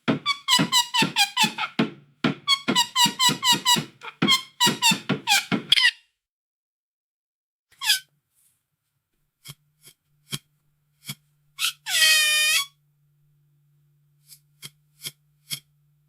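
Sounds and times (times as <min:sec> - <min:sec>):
wooden floorboard creaking: 0:00.0 - 0:05.8.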